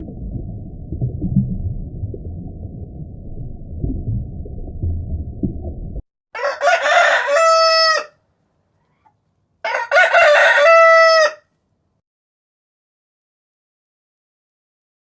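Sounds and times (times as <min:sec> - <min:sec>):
rooster crowing: 0:06.3 - 0:08.2, 0:09.6 - 0:11.5.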